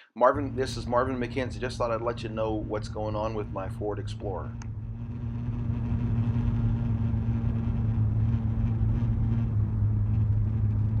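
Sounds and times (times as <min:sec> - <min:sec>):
low cabin hum: 0:00.2 - 0:11.0
road and engine noise: 0:00.4 - 0:11.0.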